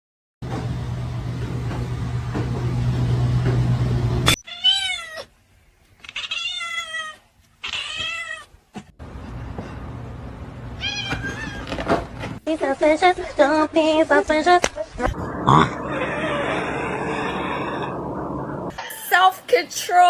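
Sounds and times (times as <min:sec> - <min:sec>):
cat meowing: 0:04.4 - 0:05.3, 0:06.0 - 0:08.5, 0:15.8 - 0:18.0
steady low hum: 0:14.9 - 0:18.8.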